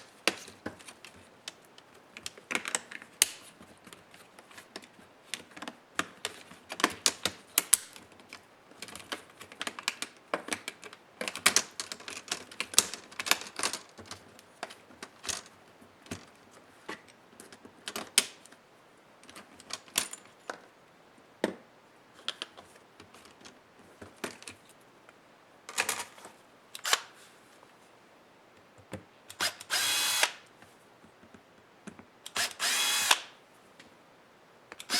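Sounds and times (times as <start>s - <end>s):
laptop parts clicking and clattering: 0.2s - 18.5s, 25.7s - 26.9s.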